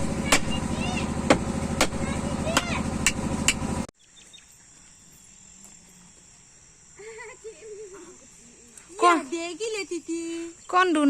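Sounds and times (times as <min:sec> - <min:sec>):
loud humming with clicks: 0:00.0 - 0:03.9
cricket trill: 0:04.0 - 0:11.0.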